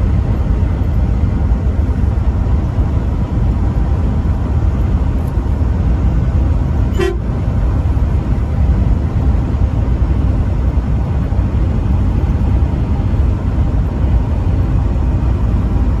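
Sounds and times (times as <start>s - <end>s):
truck engine and road rumble: 0.0s - 16.0s
short horn toot: 6.9s - 7.3s.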